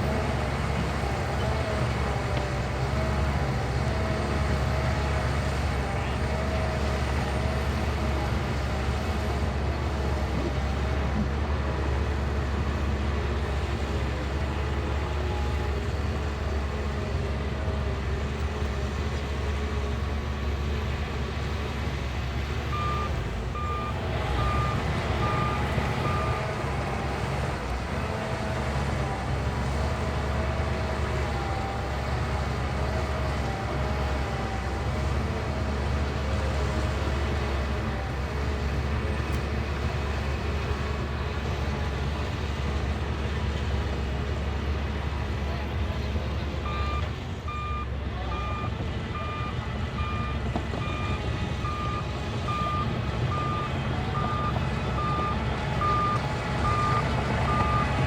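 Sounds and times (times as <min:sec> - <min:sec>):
diesel engine running under load: 0:00.0 - 0:58.0
reversing alarm beeping: 0:22.7 - 0:26.7, 0:46.6 - 0:58.0.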